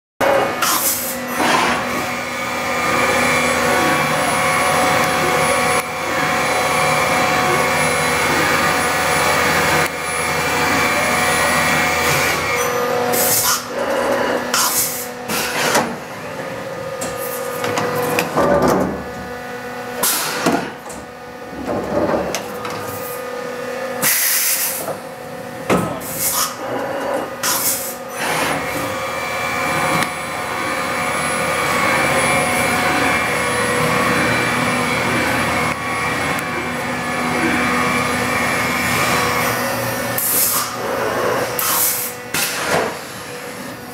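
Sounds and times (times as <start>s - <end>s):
machine hum: 0.2s - 43.9s
dense machining sound: 26.0s - 43.9s.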